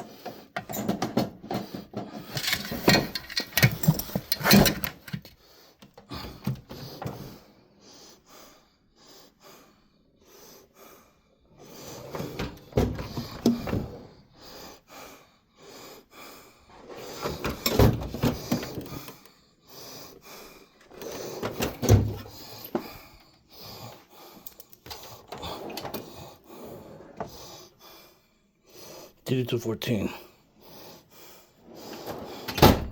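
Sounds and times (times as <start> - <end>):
tool chest clunks and rattles: 0.0 - 5.4, 6.0 - 7.4, 12.1 - 14.1, 17.0 - 19.3, 20.8 - 23.0, 31.9 - 32.9.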